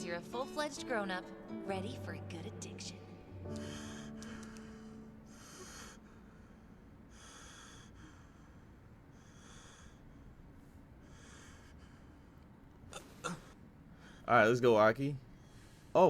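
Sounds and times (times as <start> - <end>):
person breathing slowly: 3.5 - 14.3, 15.3 - 16.0.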